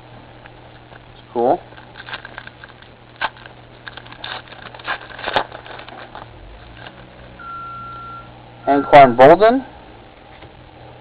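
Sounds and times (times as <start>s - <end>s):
foil pack crinkling: 1.7s - 7.1s
cards scraping and clicking: 1.8s - 7.1s
high beep: 7.4s - 9.2s.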